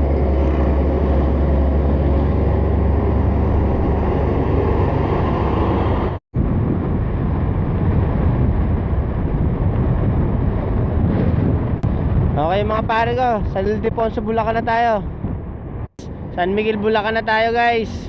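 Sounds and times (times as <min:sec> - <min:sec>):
road noise: 0:00.0 - 0:12.2
wind buffeting microphone: 0:00.0 - 0:18.0.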